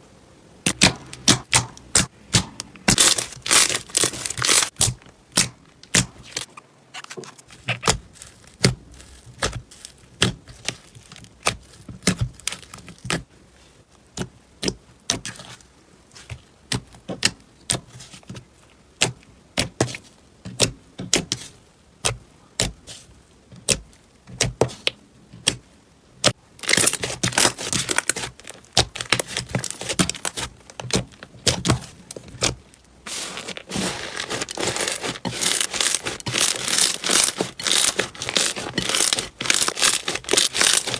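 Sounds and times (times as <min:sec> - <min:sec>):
slime crackling: 0:00.6 - 0:13.3, 0:26.2 - 0:40.9.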